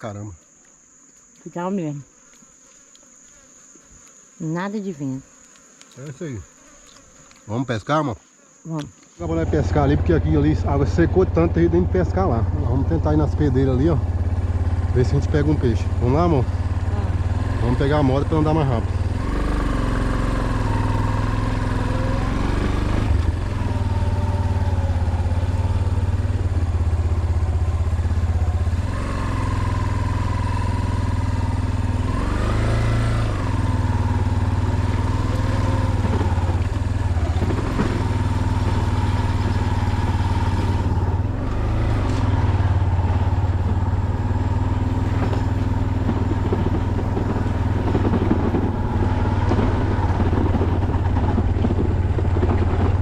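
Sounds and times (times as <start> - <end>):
motorcycle engine revving: 9.2 - 53.0.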